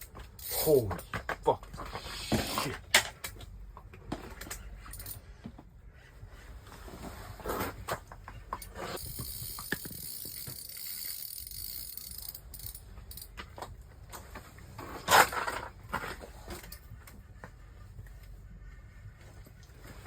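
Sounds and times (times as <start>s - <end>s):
fishing reel clicking and ratcheting: 0.4s - 0.7s, 9.0s - 13.4s.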